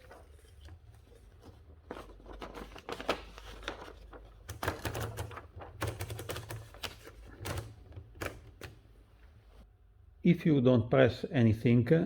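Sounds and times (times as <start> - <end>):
typewriter keys clacking: 4.4 - 8.8.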